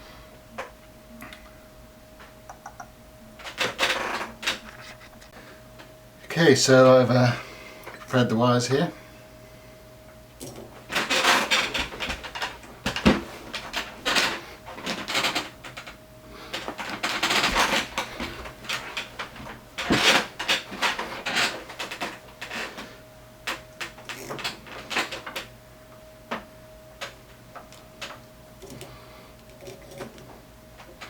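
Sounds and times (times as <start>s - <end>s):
clicks and taps of tools: 2.5s - 2.9s.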